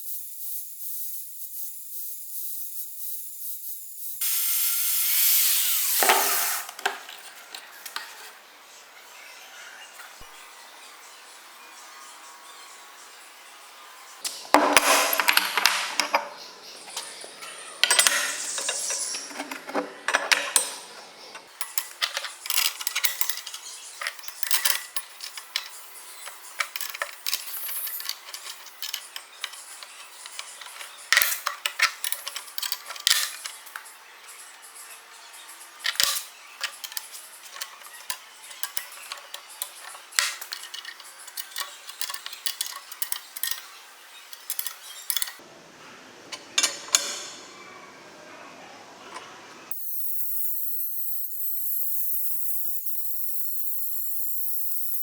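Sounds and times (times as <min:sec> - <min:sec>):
steel tools clinking: 0:16.9 - 0:34.4, 0:35.7 - 0:45.4.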